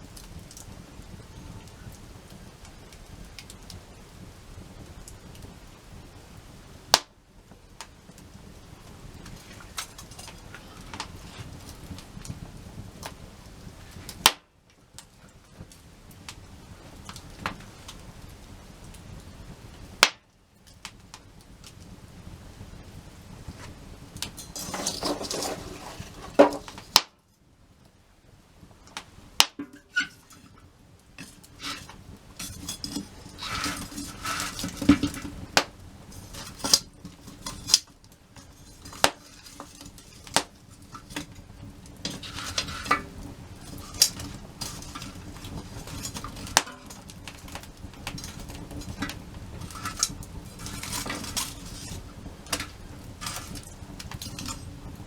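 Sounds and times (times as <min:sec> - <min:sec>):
scraping and stirring: 0:24.3 - 0:26.9, 0:29.6 - 0:30.6, 0:31.2 - 0:55.0
metal utensils clinking on cookware: 0:24.4 - 0:26.8, 0:29.6 - 0:30.5, 0:31.2 - 0:41.4, 0:42.0 - 0:54.7.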